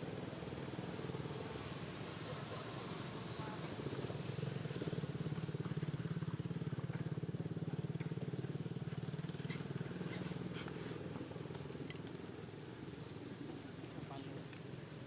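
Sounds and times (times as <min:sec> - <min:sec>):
small engine running: 0:01.0 - 0:12.5
high squeal or whistle: 0:08.1 - 0:10.1.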